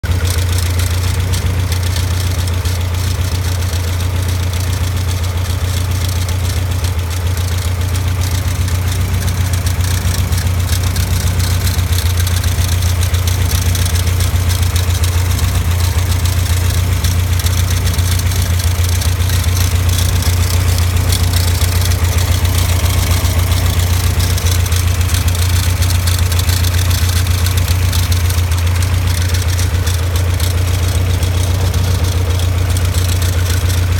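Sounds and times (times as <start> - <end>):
car engine idling: 0.0 - 33.9
alternator noise: 9.4 - 33.9.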